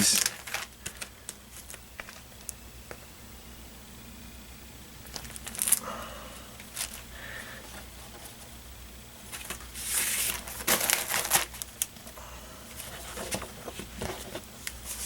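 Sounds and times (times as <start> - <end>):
paper sleeve crinkling and rustling: 0.0 - 2.5, 9.3 - 12.1, 12.8 - 15.0.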